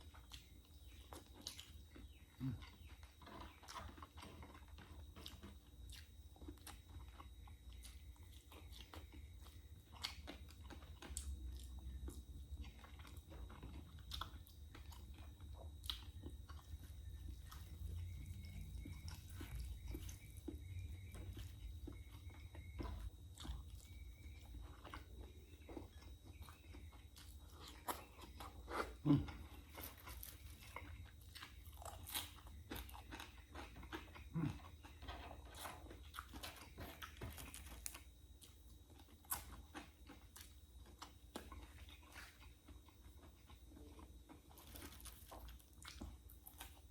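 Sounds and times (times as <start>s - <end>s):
person chewing crunchy food: 0.0s - 46.9s.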